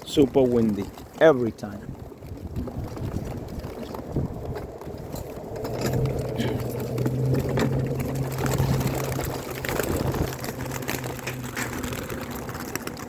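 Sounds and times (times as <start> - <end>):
strong wind buffeting microphone: 0.0 - 13.0
low hum: 3.2 - 13.0.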